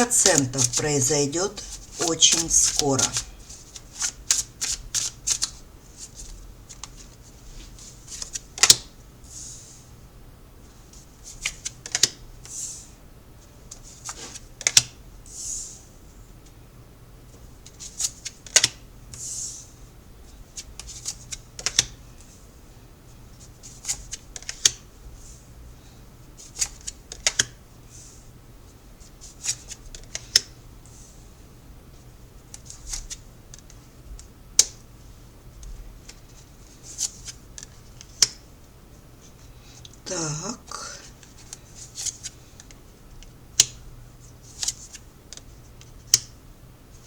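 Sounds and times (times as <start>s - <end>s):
cards sliding rustles: 0.1s - 8.8s
cards snapping and clicking: 26.6s - 27.5s.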